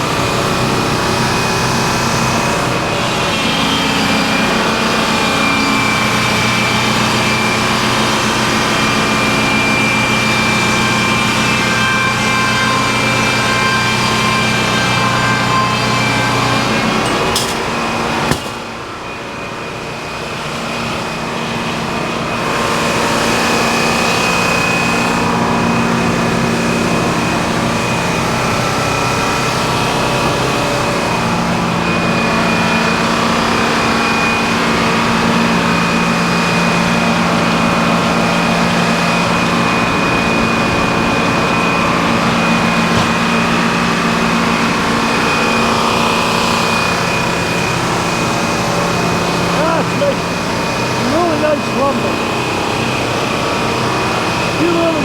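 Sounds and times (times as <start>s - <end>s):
sawmill sawing through log: 0.0s - 19.1s, 19.7s - 55.0s.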